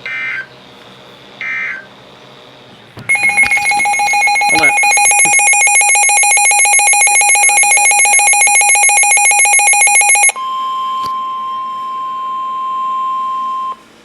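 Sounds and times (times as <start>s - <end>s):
radio alert alarm beeping: 3.1s - 10.4s
steady warning tone: 3.1s - 14.0s.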